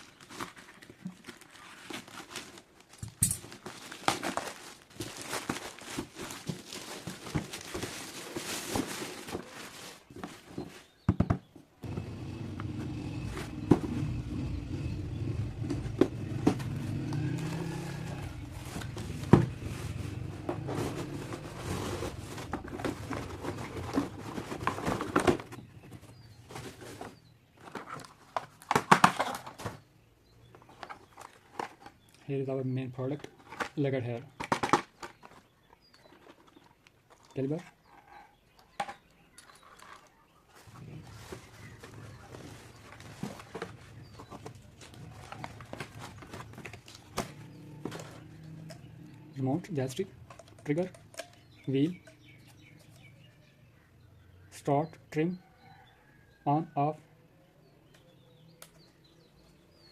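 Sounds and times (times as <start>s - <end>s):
packaging rustling and crinkling: 0.0s - 11.0s, 18.0s - 29.8s, 39.5s - 48.4s.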